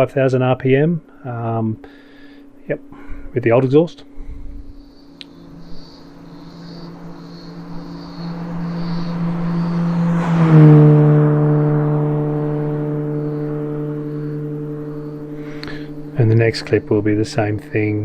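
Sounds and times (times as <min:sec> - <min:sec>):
car engine driving past: 0:04.8 - 0:17.0.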